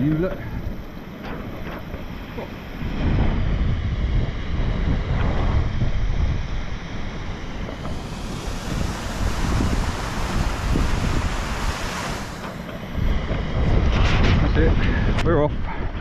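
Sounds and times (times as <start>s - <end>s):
wind buffeting microphone: 0.0s - 16.0s
bright hiss: 7.5s - 13.6s.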